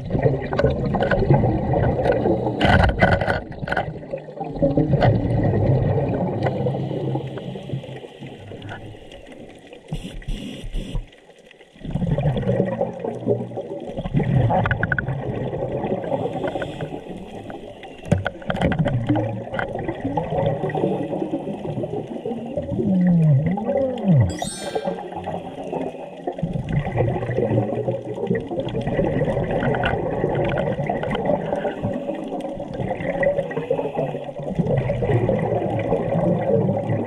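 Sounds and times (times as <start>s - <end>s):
underwater breathing bubbles: 13.9s - 37.0s.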